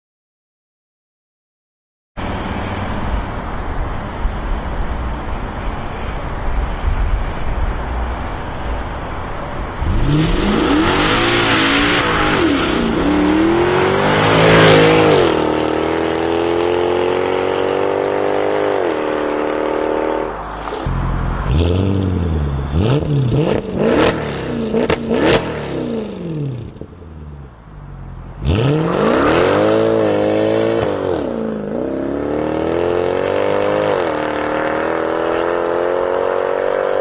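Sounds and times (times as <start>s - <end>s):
car engine revving: 9.6s - 37.0s.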